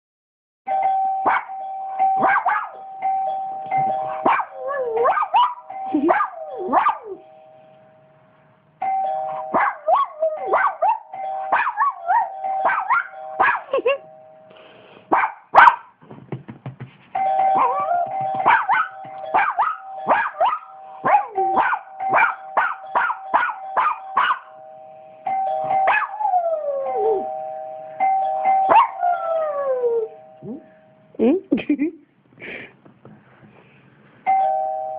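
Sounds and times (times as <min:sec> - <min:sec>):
two-note doorbell chime: 0:00.7 - 0:14.5, 0:17.2 - 0:31.1, 0:34.3 - 0:34.9
dog barking rapidly: 0:01.2 - 0:01.5, 0:02.2 - 0:02.8, 0:04.1 - 0:07.2, 0:09.4 - 0:13.7, 0:15.1 - 0:16.0, 0:17.6 - 0:24.5, 0:25.9 - 0:26.2, 0:28.7 - 0:29.0.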